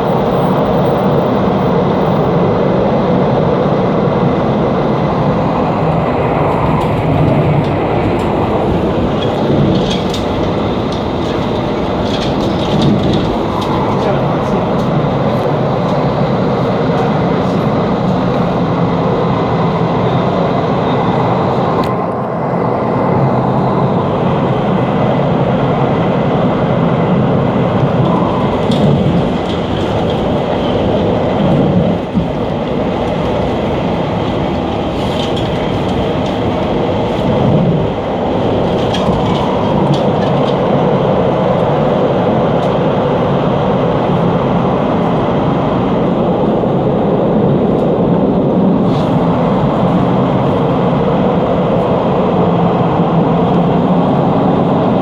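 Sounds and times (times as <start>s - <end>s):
train wheels rumbling on rail: 0.0s - 55.0s
sharp clicks and rattles: 6.8s - 16.1s.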